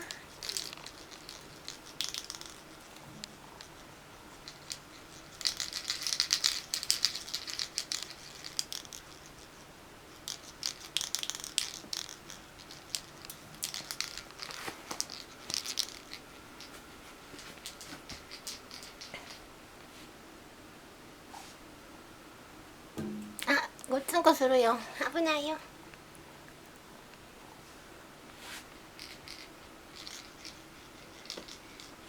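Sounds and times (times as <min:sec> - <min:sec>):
kitten rustling and scratching: 0:00.0 - 0:20.2, 0:28.3 - 0:32.0.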